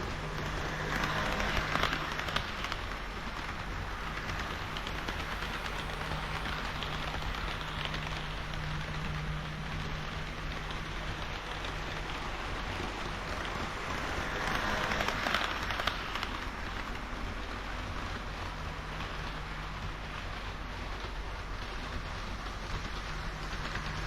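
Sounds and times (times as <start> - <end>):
low motor hum: 0.0 - 15.2
model train wheels rushing: 0.0 - 24.0.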